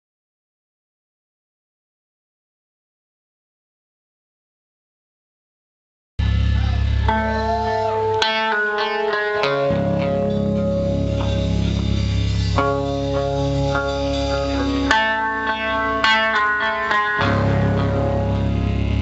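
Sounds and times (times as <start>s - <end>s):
low bass line: 6.2s - 19.0s
picked guitar notes: 6.2s - 19.0s.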